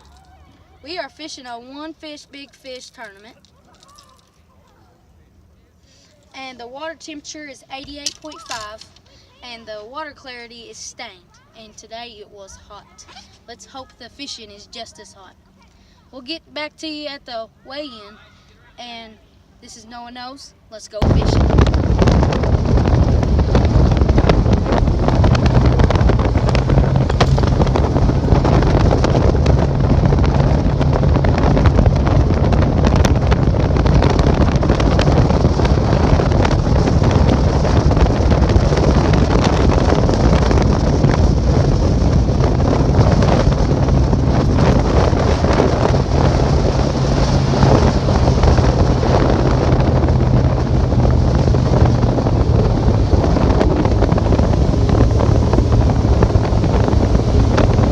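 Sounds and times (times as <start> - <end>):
outboard motor running: 21.0 - 57.9
wind buffeting microphone: 21.0 - 57.9.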